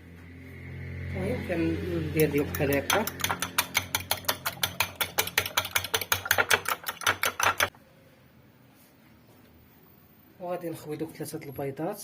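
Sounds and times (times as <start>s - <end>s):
utensil beating eggs in bowl: 2.0s - 7.7s.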